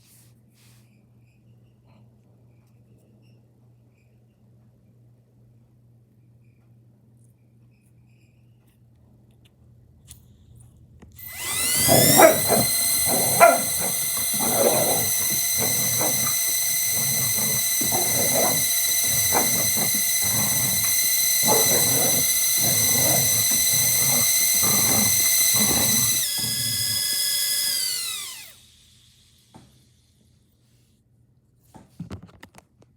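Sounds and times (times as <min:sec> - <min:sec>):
toy drone motors whining: 0:11.2 - 0:30.0
dog barking: 0:11.7 - 0:26.2.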